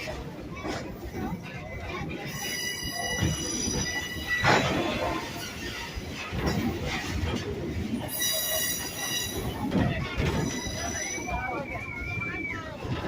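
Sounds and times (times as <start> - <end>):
train wheels rumbling: 0.0 - 13.0
high wheel squeal: 8.1 - 9.6, 10.2 - 12.6.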